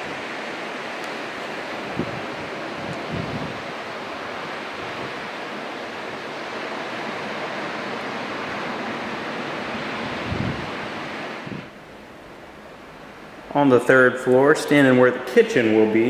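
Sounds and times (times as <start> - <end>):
ocean surf washing: 0.0 - 16.0
wind blowing on microphone: 1.7 - 5.4, 10.0 - 11.8.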